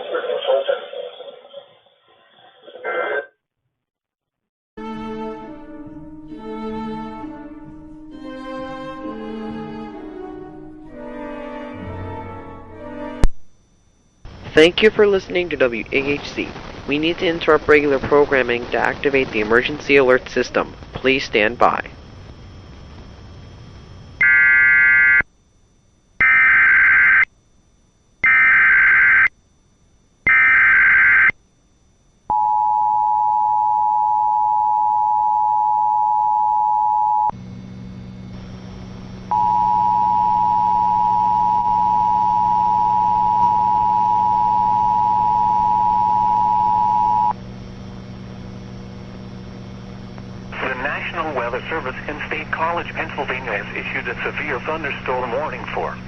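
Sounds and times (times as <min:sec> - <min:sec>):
screeching digital data bursts: 0:28.2 - 0:29.3, 0:30.3 - 0:31.3
high dual tone alert signal: 0:39.3 - 0:47.4.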